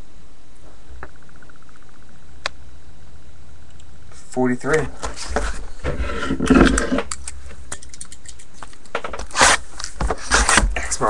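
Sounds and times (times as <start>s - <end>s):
steady low hum: 0.0s - 11.0s
card packaging crackling: 8.5s - 11.0s.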